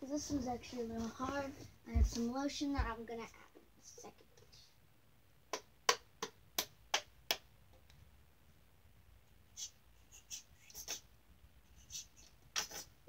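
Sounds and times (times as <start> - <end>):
faint hissing: 9.4 - 13.0.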